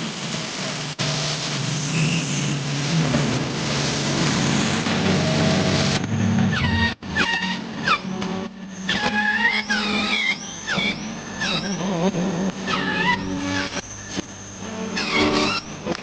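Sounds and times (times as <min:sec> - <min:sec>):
angle grinder whining: 0:04.4 - 0:16.0.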